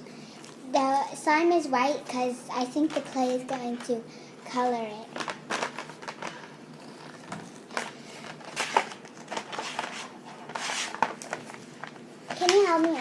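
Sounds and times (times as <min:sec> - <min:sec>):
crinkly packaging crackling: 0:02.6 - 0:04.0, 0:04.6 - 0:13.0.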